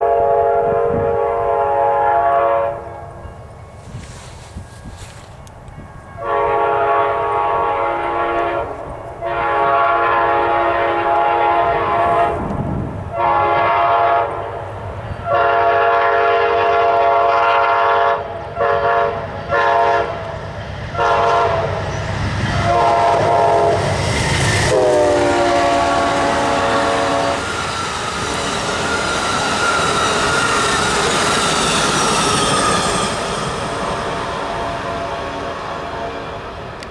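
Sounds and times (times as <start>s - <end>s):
locomotive horn blasts: 0.0s - 3.4s, 6.2s - 20.3s, 21.0s - 21.9s, 22.5s - 23.9s, 24.6s - 27.6s
train wheel clatter: 19.2s - 36.9s.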